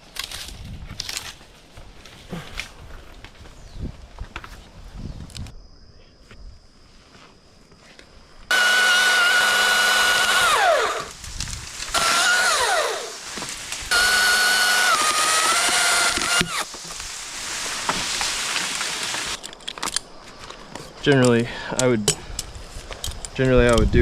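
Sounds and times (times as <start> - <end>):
electric chainsaw whining: 8.5 - 19.4.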